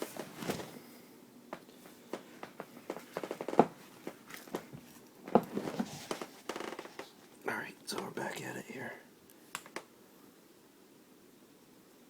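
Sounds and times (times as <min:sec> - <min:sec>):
handling clicks and rustles: 0:01.5 - 0:07.4.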